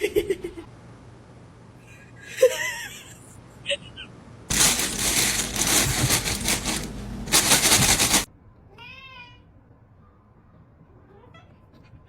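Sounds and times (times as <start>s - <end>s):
rapid rattling clatter: 4.5s - 8.3s
cat meow: 8.7s - 9.5s.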